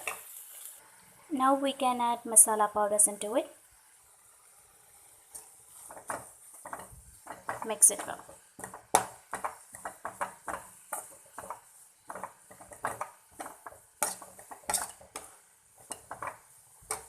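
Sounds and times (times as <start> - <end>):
utensil scraping and knocking pan: 5.4 - 17.0.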